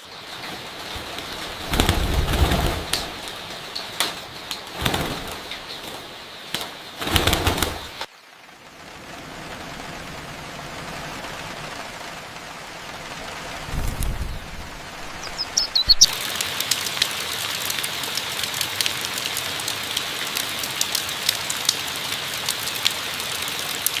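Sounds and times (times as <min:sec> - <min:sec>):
steady hiss with sharp ticks: 0:00.0 - 0:24.0
low rumble: 0:08.5 - 0:16.1
high bird chirps: 0:14.1 - 0:16.2.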